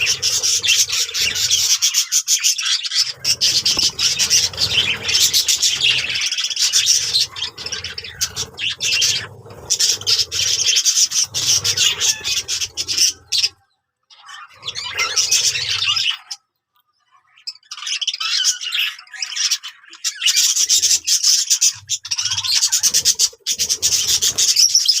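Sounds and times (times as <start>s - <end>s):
budgerigars chattering and chirping: 0.0s - 16.4s, 17.1s - 25.0s.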